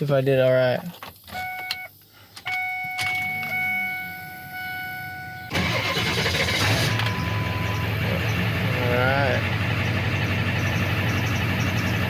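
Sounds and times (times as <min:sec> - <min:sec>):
electronic warning tone: 0:02.5 - 0:09.4
diesel engine cranking and running: 0:04.9 - 0:12.0.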